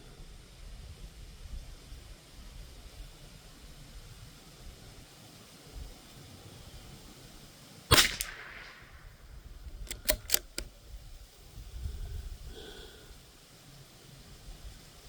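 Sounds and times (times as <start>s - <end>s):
rifle shot: 7.9s - 10.6s
rifle bolt clicks: 7.9s - 10.7s.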